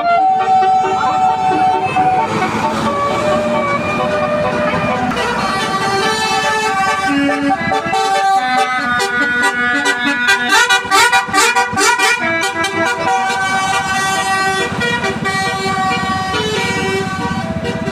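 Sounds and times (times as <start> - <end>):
multi-tone bus horn melody: 0.0 - 17.9.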